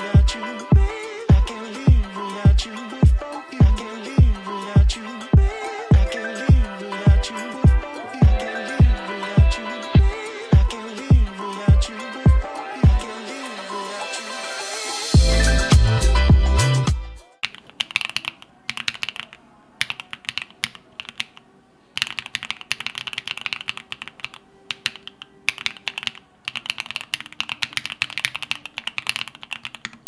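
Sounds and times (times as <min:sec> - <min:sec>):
mechanical keyboard typing: 0:17.4 - 0:21.4, 0:22.0 - 0:30.0.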